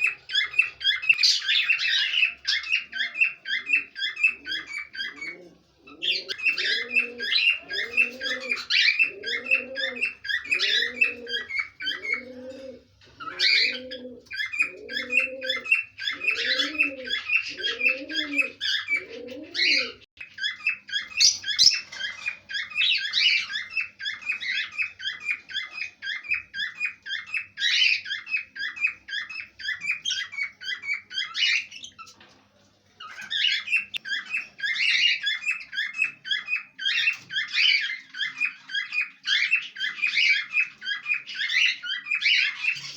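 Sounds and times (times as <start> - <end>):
parrots chirping and chattering: 0.0 - 42.9
low cooing call: 3.0 - 20.1.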